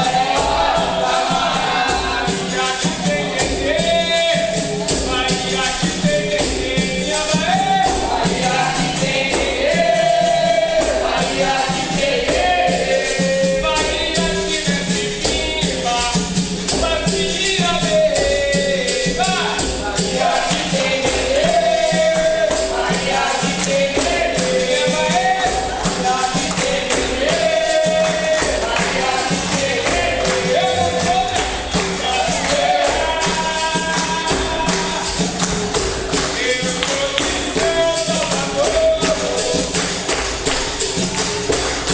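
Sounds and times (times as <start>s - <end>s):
person singing: 0.0s - 35.4s
percussion and berimbau beat: 0.0s - 41.9s.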